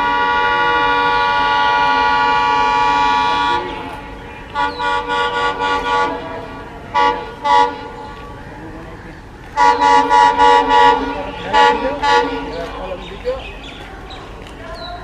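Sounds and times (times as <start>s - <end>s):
locomotive horn blasts and toots: 0.0s - 8.3s, 9.5s - 12.9s.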